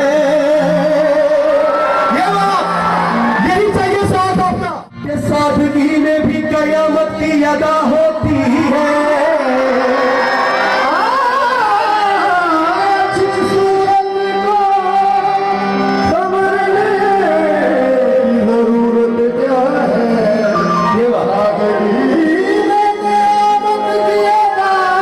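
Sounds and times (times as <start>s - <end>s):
person singing ornamented vocals: 7.1s - 25.0s.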